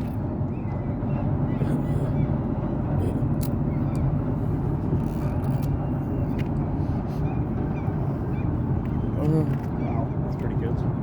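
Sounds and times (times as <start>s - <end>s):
boat engine rumble: 0.0s - 11.0s.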